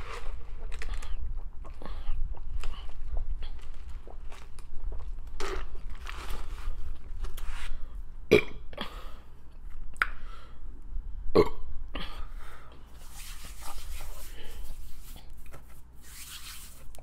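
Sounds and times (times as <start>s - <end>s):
person burping: 8.3s - 9.0s, 11.3s - 12.2s.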